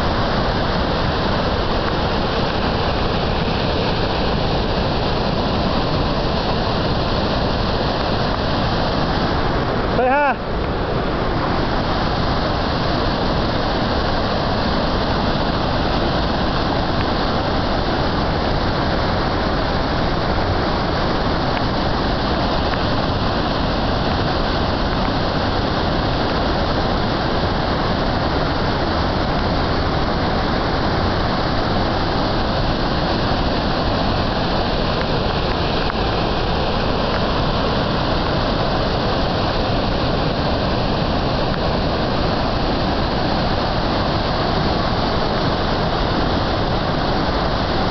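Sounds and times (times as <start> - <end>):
floodwater rushing: 0.0 - 47.9.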